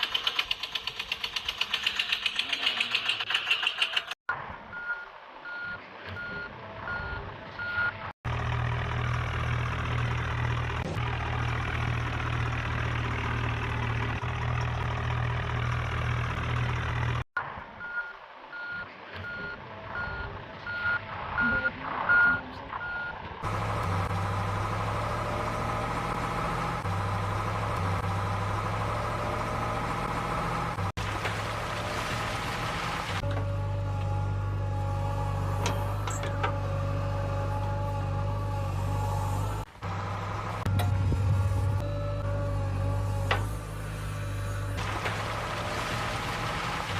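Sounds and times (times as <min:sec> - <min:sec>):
low engine hum: 0:04.3 - 0:46.9
reversing beeps: 0:04.7 - 0:08.0, 0:17.8 - 0:23.2.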